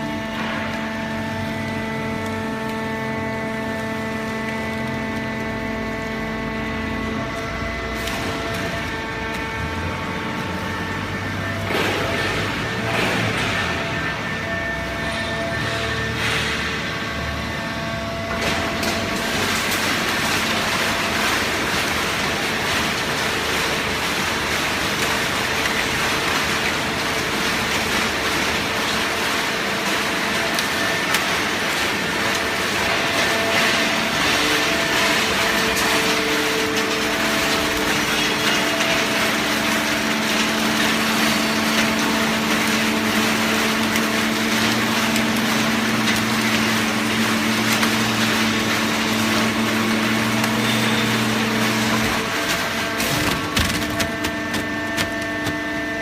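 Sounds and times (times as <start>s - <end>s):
hydraulic baling press running: 0.0s - 56.0s.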